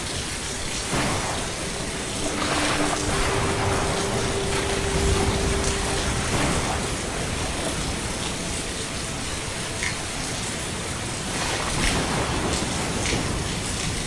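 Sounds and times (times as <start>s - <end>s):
faint steady hum: 0.0s - 13.0s
steady rain hiss: 0.0s - 14.0s.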